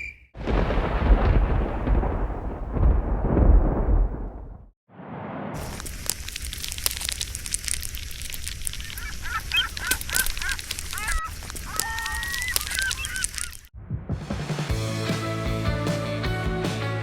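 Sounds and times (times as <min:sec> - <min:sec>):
steady crackling and clicking: 0:05.6 - 0:13.7
geese honking: 0:08.8 - 0:13.6.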